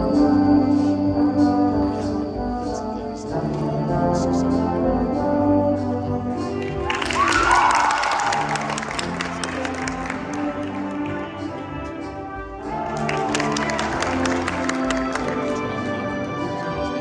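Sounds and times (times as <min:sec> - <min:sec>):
orchestral brass chords: 0:00.0 - 0:17.0
crowd applause and cheering: 0:06.5 - 0:11.9, 0:12.7 - 0:16.4.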